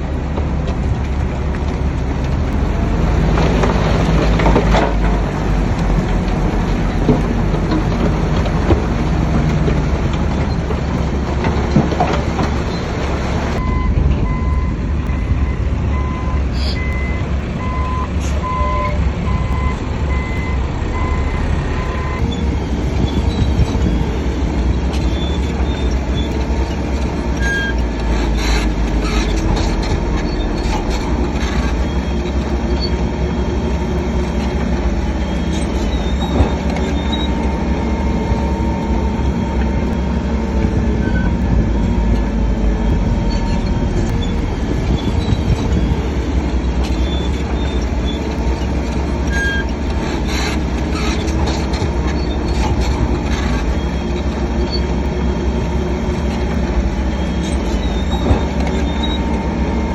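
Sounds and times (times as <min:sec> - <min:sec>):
diesel engine rumble: 0:00.0 - 0:59.9
metal squeals and clanks: 0:02.5 - 0:59.9
reversing beeper: 0:13.6 - 0:26.4.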